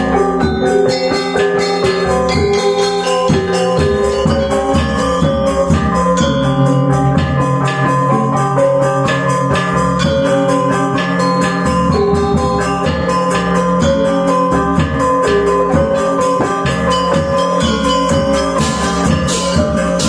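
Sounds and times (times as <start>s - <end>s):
gamelan ensemble playing: 0.0s - 20.0s.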